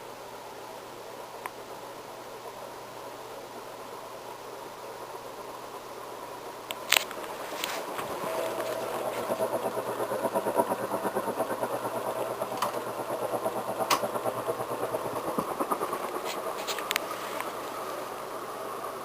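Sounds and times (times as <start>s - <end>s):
ceiling fan motor humming: 0.0s - 19.0s
sharp ticks: 8.6s - 17.5s.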